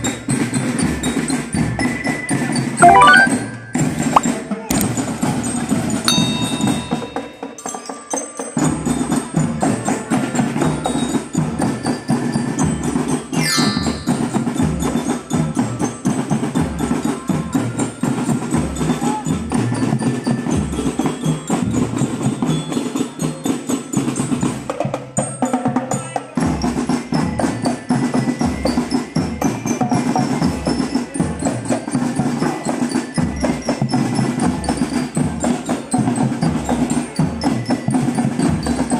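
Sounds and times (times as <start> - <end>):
bell-lyre melody: 2.8 - 4.0, 6.1 - 8.0.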